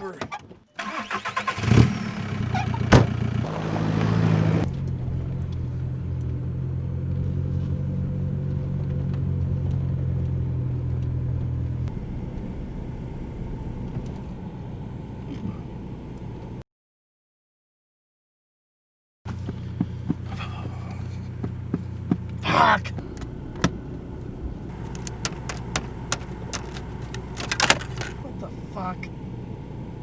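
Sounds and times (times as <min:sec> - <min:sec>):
car engine starting and idling: 0:00.8 - 0:03.5
sharp clicks: 0:22.9 - 0:24.0, 0:24.9 - 0:28.2.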